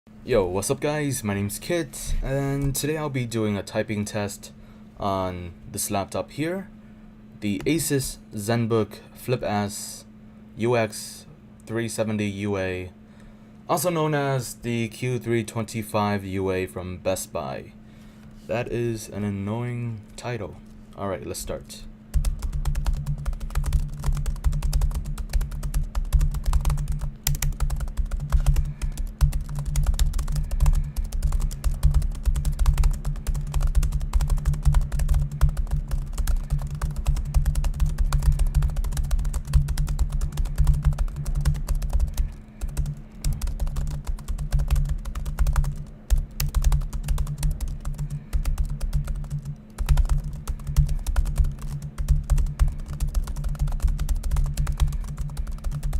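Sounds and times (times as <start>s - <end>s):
steady low hum: 0.1s - 55.9s
laptop keyboard typing: 22.1s - 55.9s.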